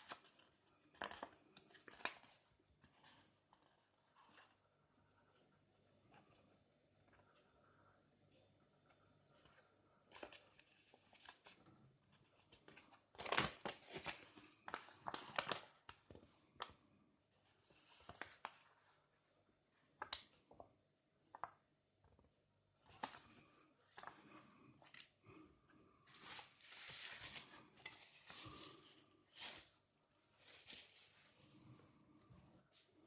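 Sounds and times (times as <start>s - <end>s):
packaging crinkling and tearing: 12.5s - 15.9s.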